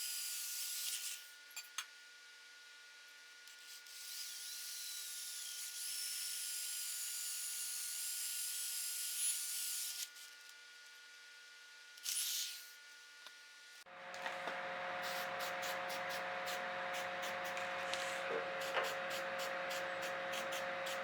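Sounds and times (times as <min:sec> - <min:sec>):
handheld power tool whining: 0:13.9 - 0:21.0.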